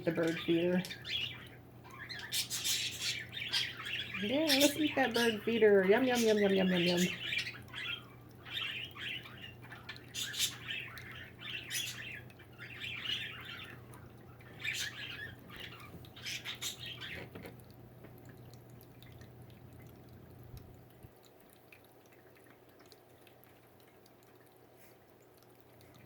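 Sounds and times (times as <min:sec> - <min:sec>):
birds calling: 0:00.0 - 0:17.4.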